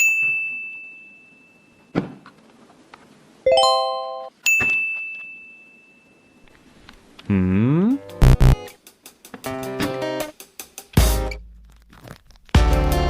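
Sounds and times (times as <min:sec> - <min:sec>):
high bell-like ding: 0:03.5 - 0:06.4.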